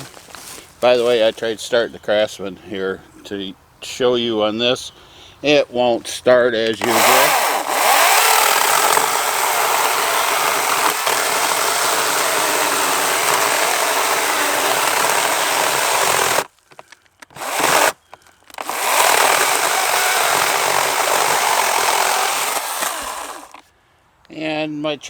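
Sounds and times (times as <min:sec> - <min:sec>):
electric chainsaw cutting log: 0:06.8 - 0:16.5, 0:17.3 - 0:23.6.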